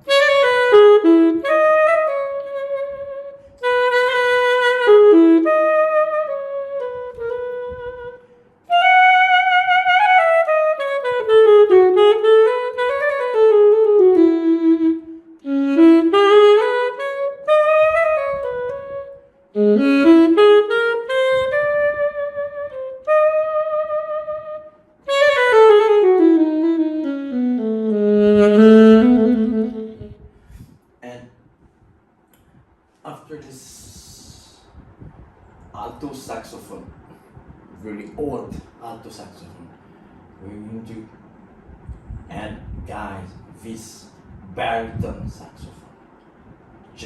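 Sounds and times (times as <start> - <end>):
solo saxophone melody: 0.0 - 30.6.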